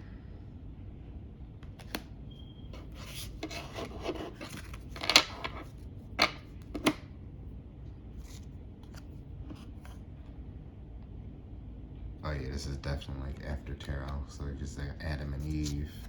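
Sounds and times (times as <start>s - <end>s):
cards sliding and rubbing: 2.7s - 5.8s, 8.2s - 10.1s, 15.3s - 16.0s.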